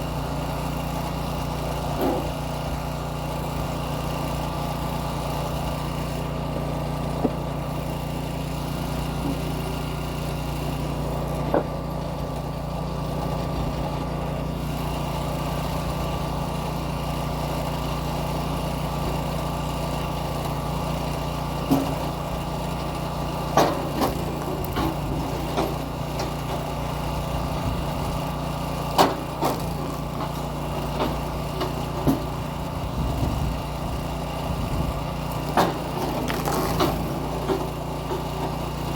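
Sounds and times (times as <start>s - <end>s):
small gasoline engine running: 0.0s - 38.9s
logs splitting with cracks: 35.4s - 37.2s.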